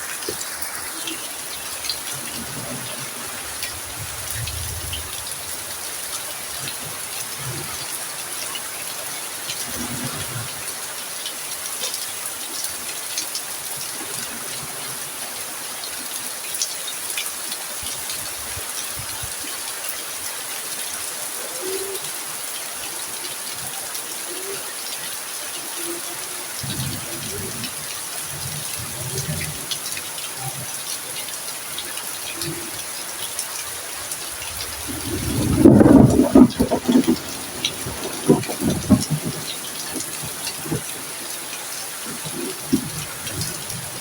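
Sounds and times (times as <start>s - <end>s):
heavy rain with ticking drops: 0.0s - 44.0s.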